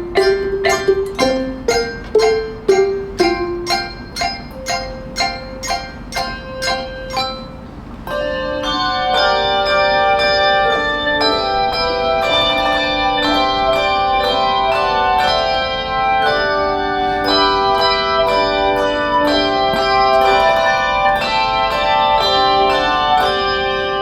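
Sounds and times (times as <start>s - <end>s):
handbell choir playing: 0.0s - 24.0s.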